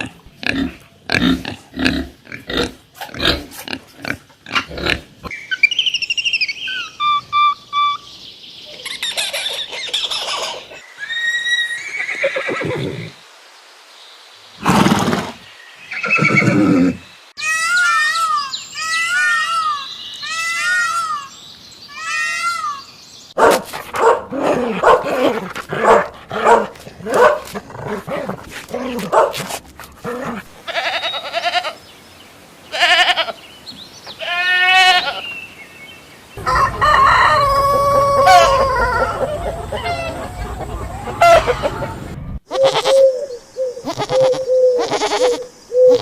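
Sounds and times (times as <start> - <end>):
goat bleating: 30.6 - 31.8, 34.2 - 35.2, 43.9 - 45.4
rooster crowing: 36.4 - 42.1
farm animal calls: 36.4 - 46.0.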